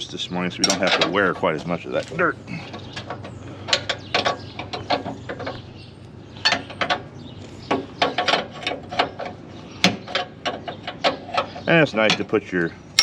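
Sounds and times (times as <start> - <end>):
hand tools clinking on steel: 0.6 - 5.6.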